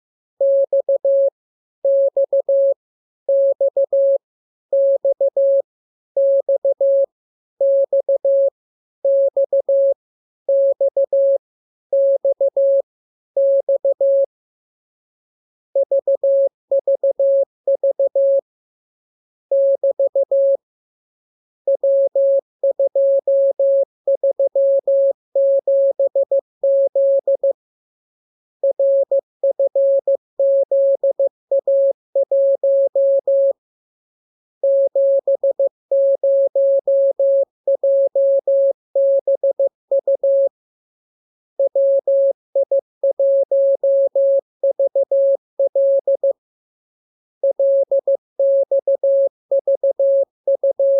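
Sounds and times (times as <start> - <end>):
morse code beeps: 13.4 - 14.3, 15.8 - 18.4, 19.5 - 20.6, 21.7 - 27.6, 28.6 - 33.6, 34.6 - 40.5, 41.6 - 46.4, 47.4 - 50.9.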